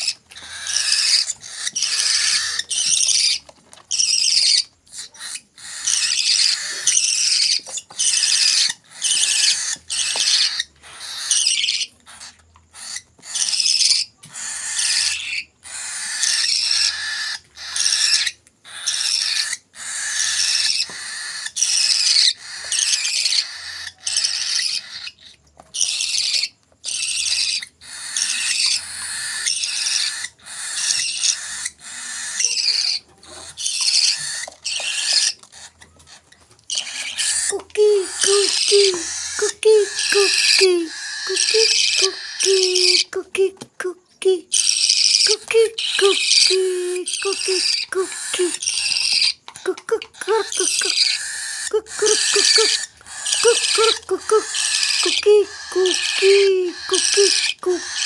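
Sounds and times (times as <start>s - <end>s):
parrot chicks begging calls: 0.0s - 58.0s.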